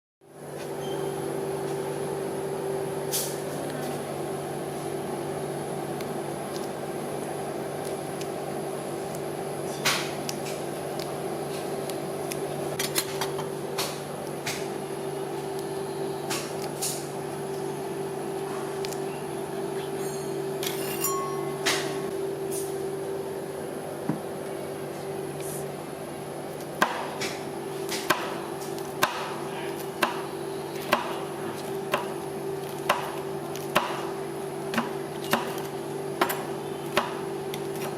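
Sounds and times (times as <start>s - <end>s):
steady hum: 0.2s - 37.9s.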